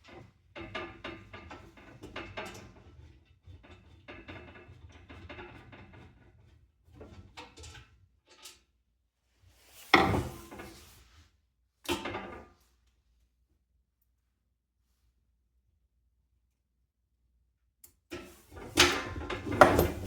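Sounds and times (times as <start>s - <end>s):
fan being handled knocking: 19.4s - 20.0s.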